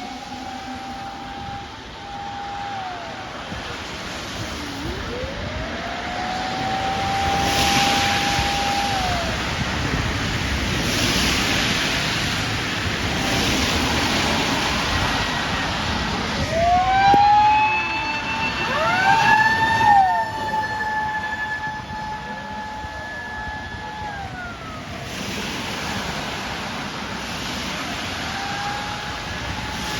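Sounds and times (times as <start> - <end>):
sweeping siren tones: 0.0 - 10.4, 13.2 - 26.6
motor siren wailing: 0.0 - 10.6, 13.2 - 25.1.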